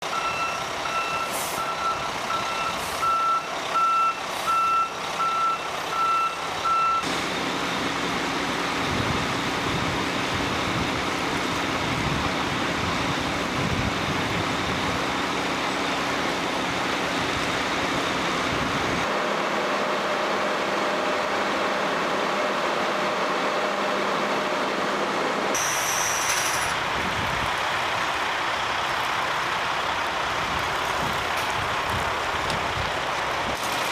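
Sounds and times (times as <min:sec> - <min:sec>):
vehicle reversing alarm beeping: 0:00.0 - 0:07.1
drone of snow blowers: 0:00.0 - 0:33.9
brief hiss: 0:25.6 - 0:26.7.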